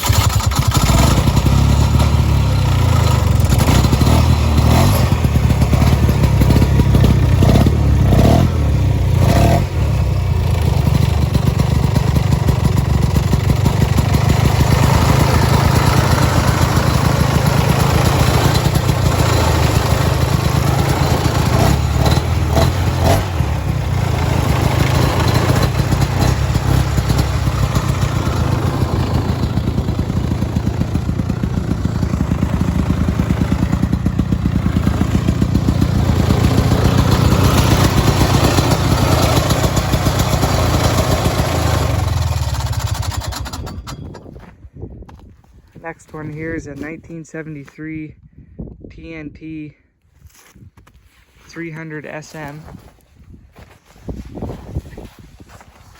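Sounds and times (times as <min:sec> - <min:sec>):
snowmobile engine running: 0:00.0 - 0:44.1.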